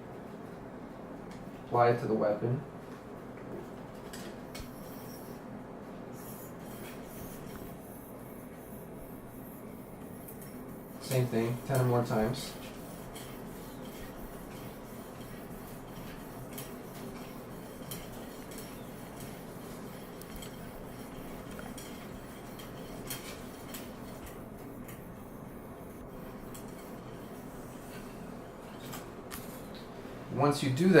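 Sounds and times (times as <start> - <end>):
cleaning rod rubbing in barrel: 4.6 - 5.4, 6.2 - 28.7.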